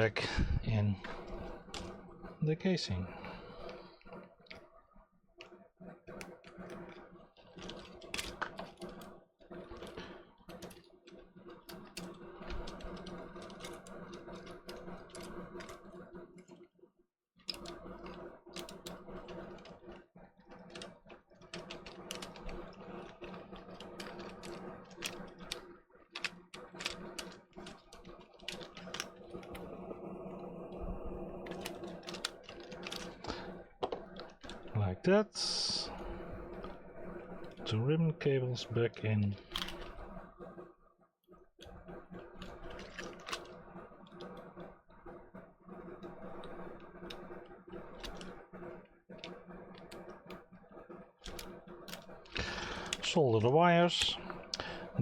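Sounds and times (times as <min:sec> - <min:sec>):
steady low hum: 0:17.4 - 0:40.8.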